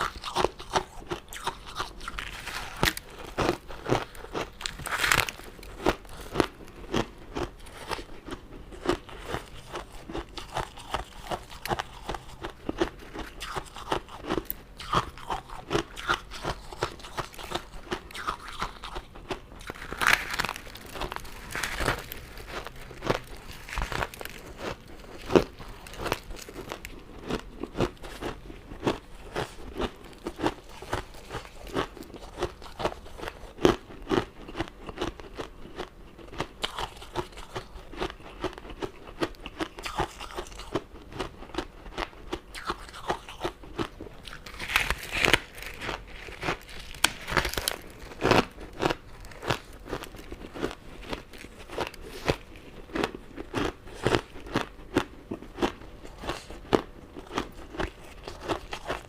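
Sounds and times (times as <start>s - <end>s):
crunching hard candy: 0.0s - 59.0s.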